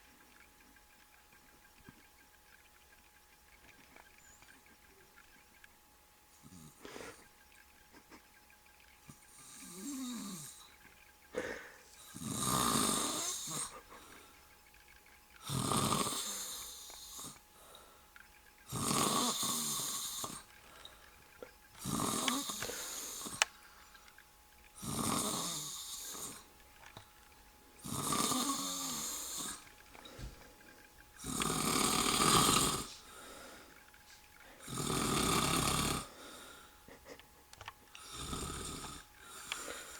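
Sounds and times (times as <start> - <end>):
man snoring heavily: 9.4 - 10.6, 11.4 - 13.8, 15.4 - 17.4, 18.7 - 20.4, 21.8 - 23.4, 24.8 - 26.5, 27.8 - 29.6, 31.2 - 33.2, 34.6 - 36.4, 38.0 - 39.9.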